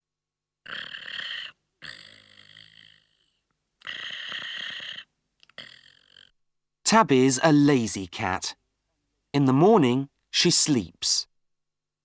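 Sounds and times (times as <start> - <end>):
cartoon snoring: 0.6 - 6.4.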